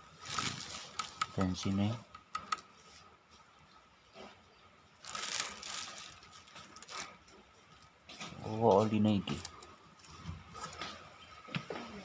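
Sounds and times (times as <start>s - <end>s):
scraping rustle: 0.0s - 1.3s, 5.0s - 11.2s.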